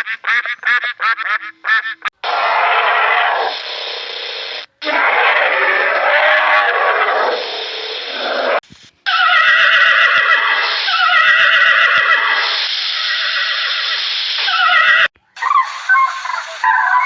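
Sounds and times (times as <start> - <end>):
horse whinnying: 9.1 - 12.4.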